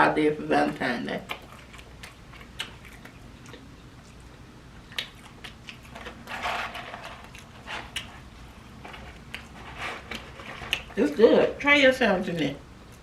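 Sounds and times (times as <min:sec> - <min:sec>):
person chewing food: 0:01.2 - 0:11.0.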